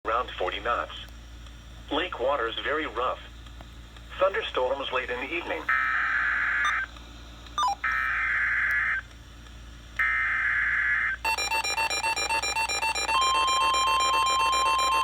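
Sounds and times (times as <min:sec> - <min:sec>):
radio hiss: 0:01.8 - 0:09.1
buzzing digital data tones: 0:05.7 - 0:06.9, 0:07.6 - 0:09.0
pulsing electronic alert beep: 0:11.3 - 0:15.0.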